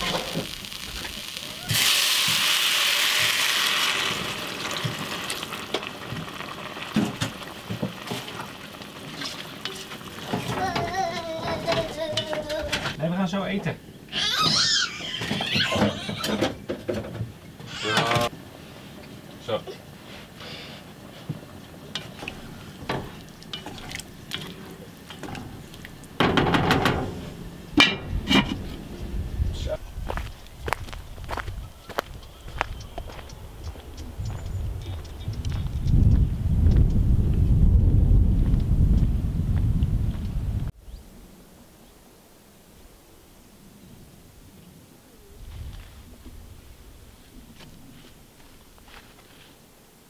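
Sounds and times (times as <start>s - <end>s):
food sizzling in a pot: 0.0s - 10.6s.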